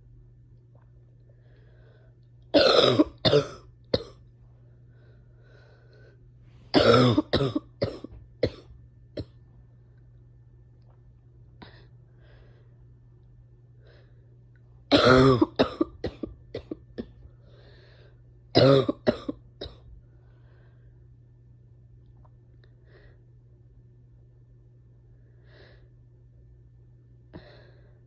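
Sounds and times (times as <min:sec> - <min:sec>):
steady low hum: 0:00.0 - 0:28.0
person coughing: 0:02.6 - 0:04.2, 0:06.7 - 0:09.4, 0:14.9 - 0:17.2, 0:18.6 - 0:19.9.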